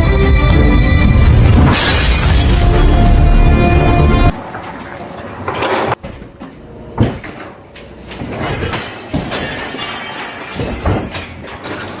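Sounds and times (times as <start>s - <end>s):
sharp crashes and clattering knocks: 1.4s - 12.0s.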